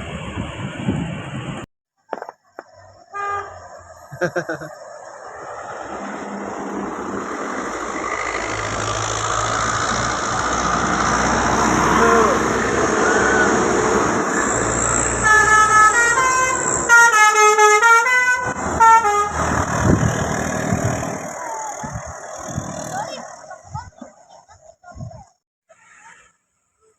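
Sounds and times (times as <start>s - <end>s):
bus engine and road noise: 0.0s - 26.3s
multi-tone air horn melody: 15.1s - 19.5s.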